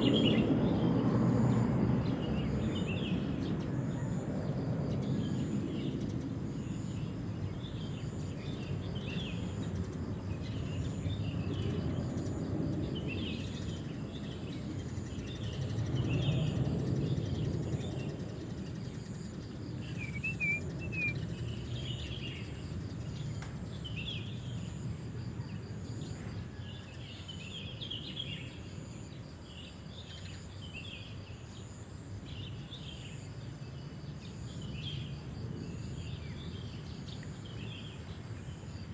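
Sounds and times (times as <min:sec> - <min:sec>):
crickets droning: 0:00.0 - 0:38.9
birds chirping: 0:17.2 - 0:23.2.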